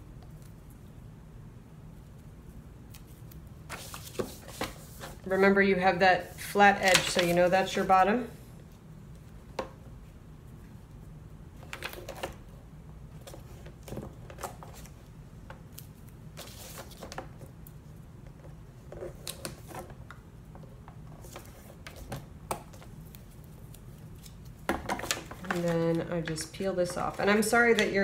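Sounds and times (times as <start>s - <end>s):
steady low hum: 0.0s - 28.0s
paper envelopes rustling: 3.0s - 5.3s, 23.2s - 28.0s.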